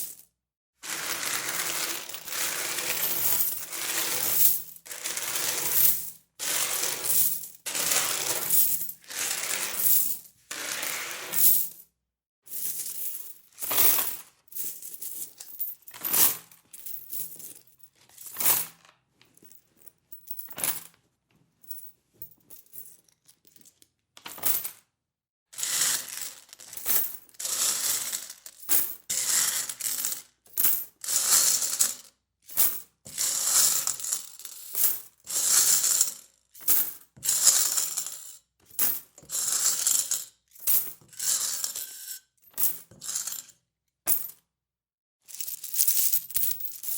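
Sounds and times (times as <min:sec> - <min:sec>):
metal coins clinking: 0:01.0 - 0:06.0, 0:45.4 - 0:46.9
coins jingling: 0:45.6 - 0:46.9.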